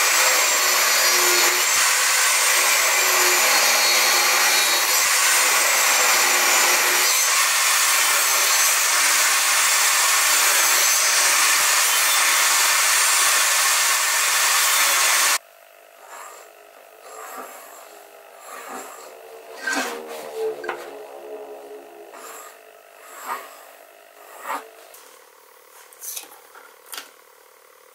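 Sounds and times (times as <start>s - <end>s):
power tool cutting wood: 0.0s - 15.4s, 16.0s - 25.2s
scraping and handling sounds: 16.0s - 21.1s, 22.1s - 27.1s.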